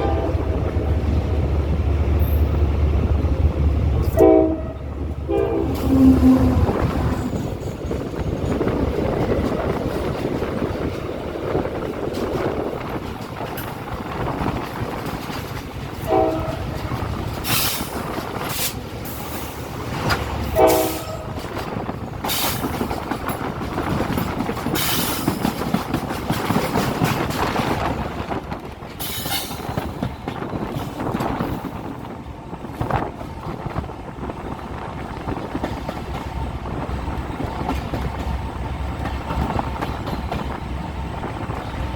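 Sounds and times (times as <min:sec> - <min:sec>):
train horn blasts: 0:00.0 - 0:00.6, 0:04.0 - 0:07.2, 0:16.0 - 0:17.0, 0:20.5 - 0:21.4
train rumble and wheel clatter: 0:00.0 - 0:41.9.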